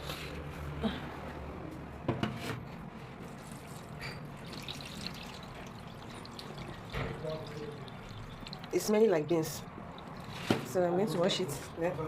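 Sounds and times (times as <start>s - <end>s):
small knocks and splashes: 3.4s - 11.8s
water trickling: 3.4s - 12.0s.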